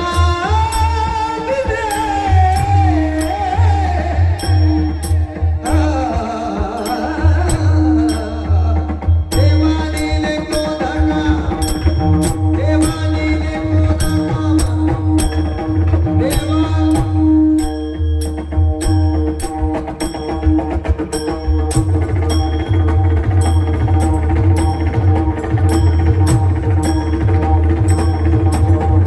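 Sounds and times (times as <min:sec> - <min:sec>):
deep drum beats: 0:00.0 - 0:29.0
wavering melodic line: 0:01.9 - 0:29.0
steady drone: 0:13.7 - 0:29.0.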